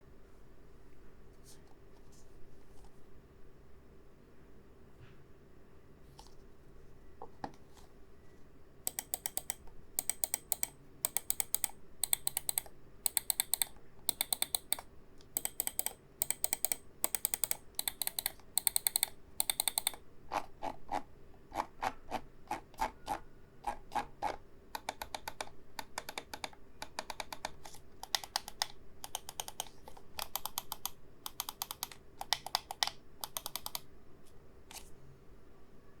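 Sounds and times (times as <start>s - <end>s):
mouse buttons clicking: 8.9s - 20.0s, 24.8s - 33.9s.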